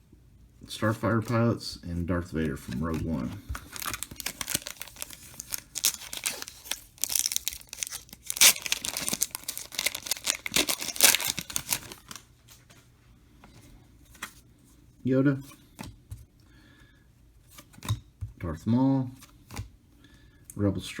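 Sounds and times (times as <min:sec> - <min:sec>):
wrapper crinkling: 0:02.8 - 0:12.3.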